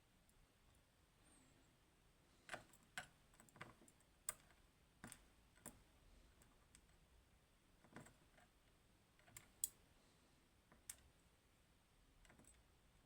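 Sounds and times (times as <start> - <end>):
small metal lock parts clicking: 9.2 - 9.8, 12.2 - 12.6.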